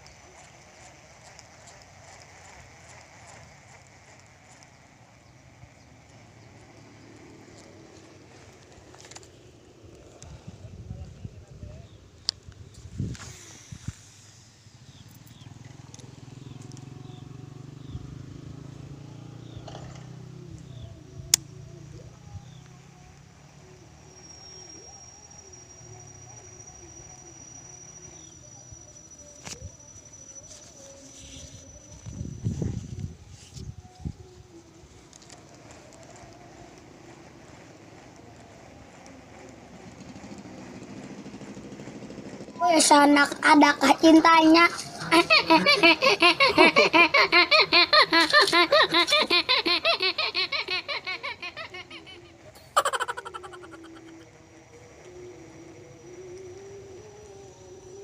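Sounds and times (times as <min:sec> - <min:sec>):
high-pitched insect drone: 0:12.7 - 0:58.0
high-pitched laughter: 0:44.6 - 0:54.2
faint wavering low sounds: 0:54.0 - 0:58.0.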